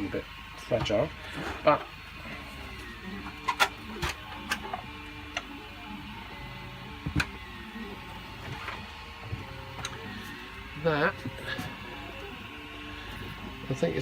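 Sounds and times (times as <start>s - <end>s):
stepper motors whirring: 0.0s - 14.0s
plastic parts clicking and knocking: 3.3s - 5.5s.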